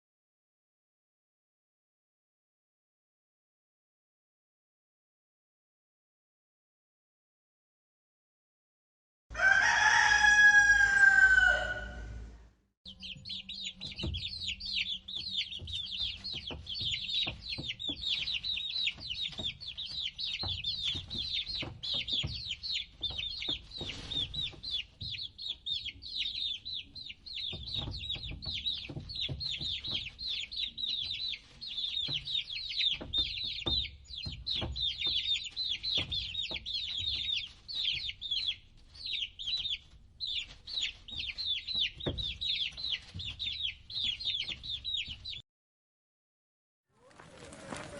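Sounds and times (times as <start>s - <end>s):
rooster crowing: 9.3s - 12.2s
chicks peeping: 9.4s - 12.3s, 12.9s - 45.4s.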